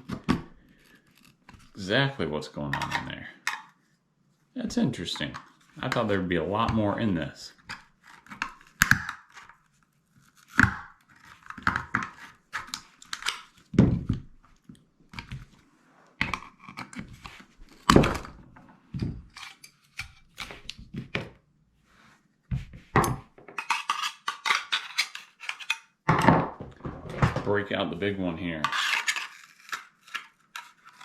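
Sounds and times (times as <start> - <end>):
plastic parts scraping: 5.0 - 14.2, 22.8 - 31.0.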